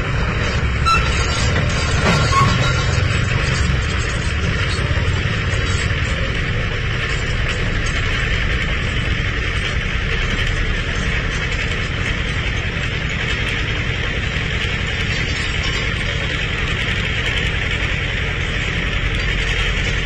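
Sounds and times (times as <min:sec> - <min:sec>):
heavy diesel engine running: 0:00.0 - 0:20.0.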